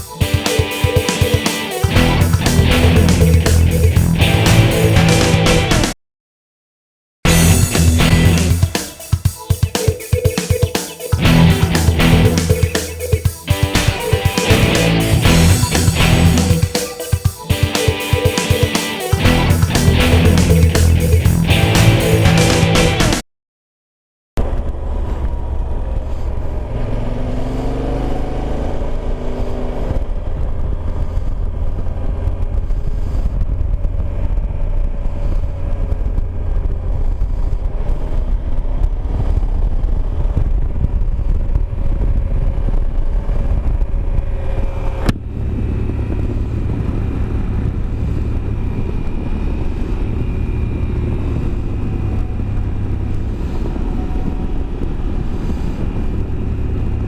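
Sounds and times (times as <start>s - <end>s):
motorcycle engine running: 7.3s - 9.4s.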